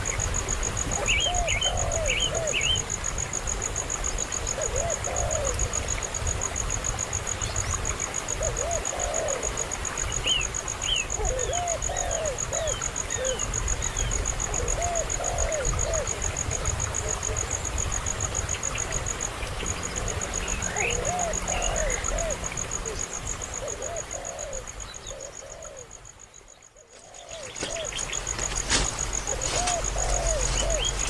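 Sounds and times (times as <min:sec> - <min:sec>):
young bird calling: 0:29.3 - 0:31.0.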